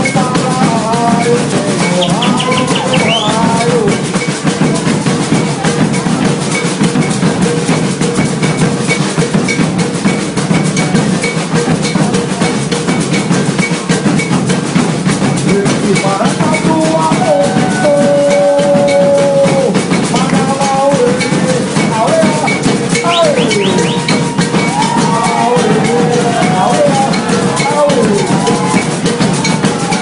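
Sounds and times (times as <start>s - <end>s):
pitched melody line: 0.0s - 6.8s, 15.5s - 30.0s
fast percussion drumming: 0.0s - 30.0s.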